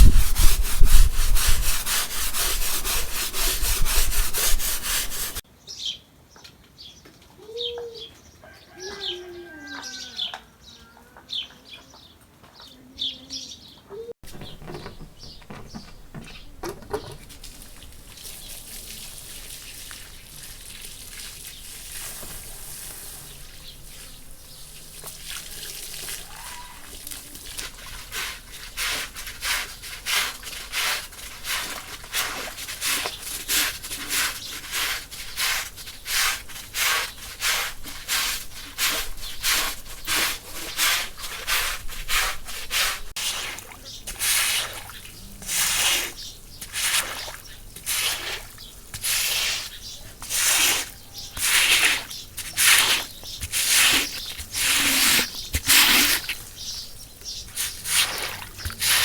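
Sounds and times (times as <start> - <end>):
stiff brush scrubbing: 0.0 - 5.4, 14.2 - 59.0
faint outdoor background: 0.0 - 59.0.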